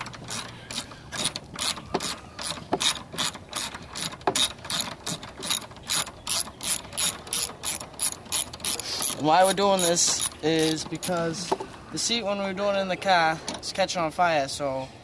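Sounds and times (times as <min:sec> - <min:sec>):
ratchet wrench clicking: 0:00.3 - 0:11.2.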